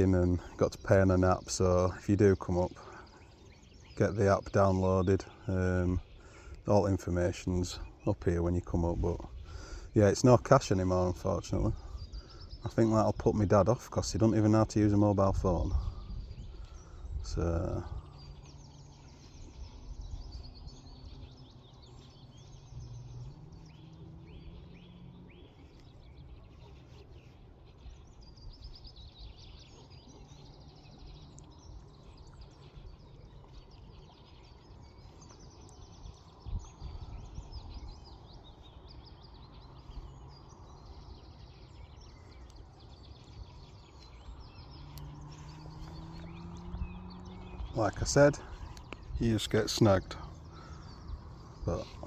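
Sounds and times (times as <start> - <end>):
small songbirds chirping: 0.0 - 52.0
wind rumble on microphone: 3.4 - 52.0.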